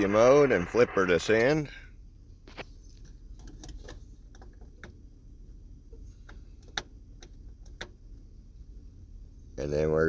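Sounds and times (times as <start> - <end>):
radio controls clicking: 0.0 - 1.6
low steady rumble: 0.0 - 10.0.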